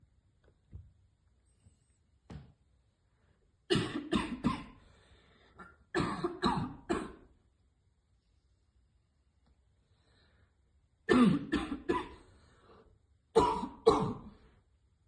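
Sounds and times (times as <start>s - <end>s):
woman coughing hard: 3.7s - 4.8s, 5.6s - 7.3s, 11.1s - 12.2s, 13.4s - 14.4s.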